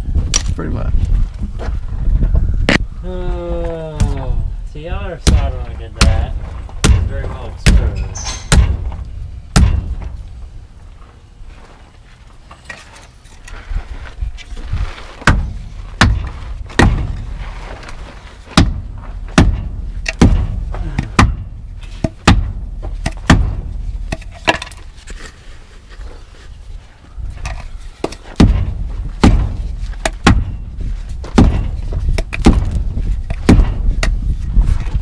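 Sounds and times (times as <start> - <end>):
hammer striking wheel: 5.2 - 10.2, 15.2 - 17.2, 18.6 - 24.6.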